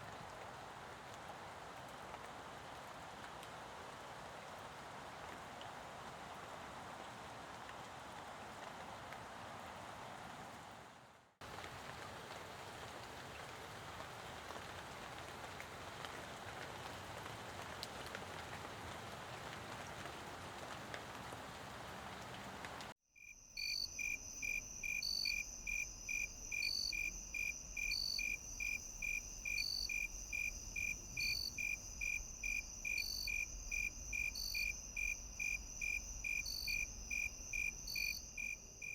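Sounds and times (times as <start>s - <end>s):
steady rain falling: 0.0s - 23.0s, 23.6s - 38.9s
crickets chirping: 23.2s - 38.9s
high-pitched insect trill: 23.2s - 38.9s
higher insect chirp: 23.2s - 38.9s.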